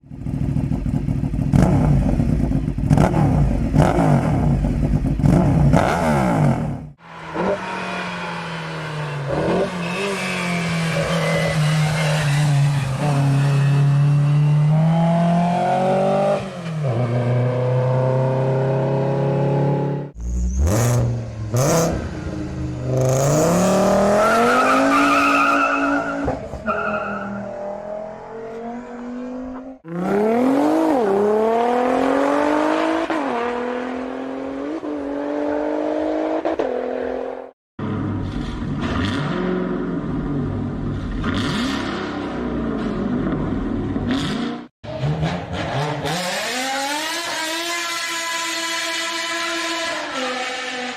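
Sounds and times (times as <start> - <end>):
car engines revving: 1.3 - 50.9.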